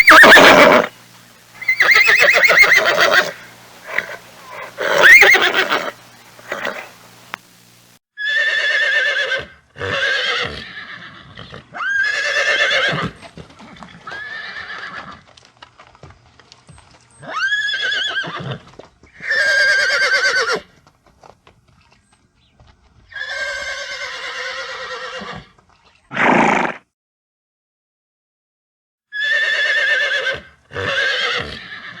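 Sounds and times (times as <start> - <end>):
horse whinnying: 0.0 - 0.9, 1.6 - 7.0, 8.2 - 13.2, 13.9 - 15.2, 17.2 - 20.7, 23.1 - 26.8, 29.1 - 32.0.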